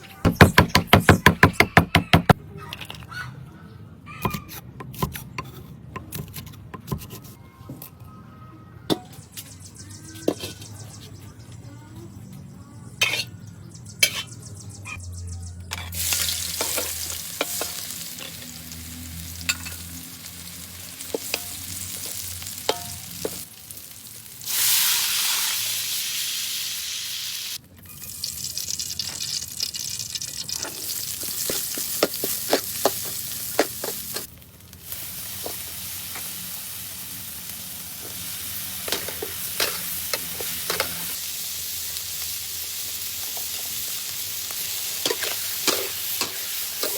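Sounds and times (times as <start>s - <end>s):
food sizzling in a pan: 15.9s - 46.9s.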